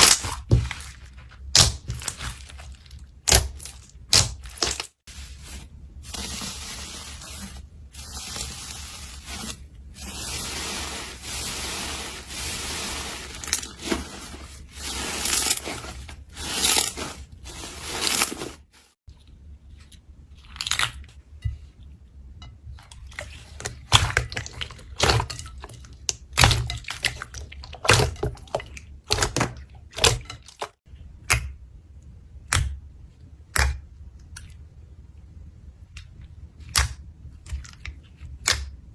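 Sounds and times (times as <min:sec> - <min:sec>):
wet crackling of slime: 0:00.0 - 0:19.0.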